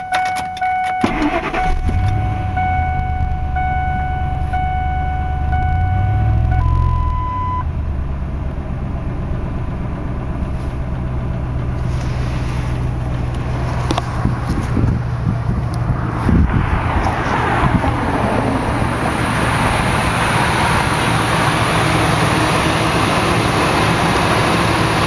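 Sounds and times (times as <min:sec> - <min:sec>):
warning chime: 0:00.0 - 0:07.6
truck engine starting and idling: 0:00.0 - 0:25.0.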